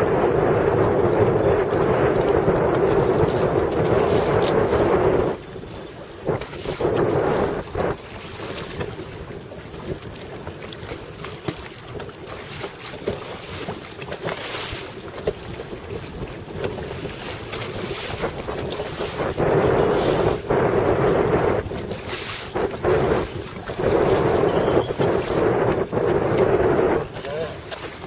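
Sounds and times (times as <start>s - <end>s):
water rushing along boat hull: 0.0s - 28.0s
wind buffeting microphone: 0.0s - 28.0s
small splashes and knocks: 7.6s - 19.3s, 26.1s - 28.0s.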